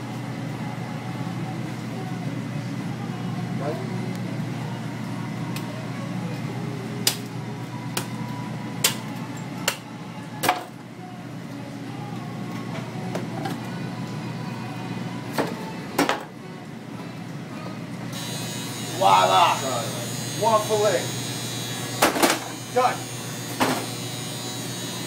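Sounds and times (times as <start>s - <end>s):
low kitchen hum: 0.0s - 19.8s.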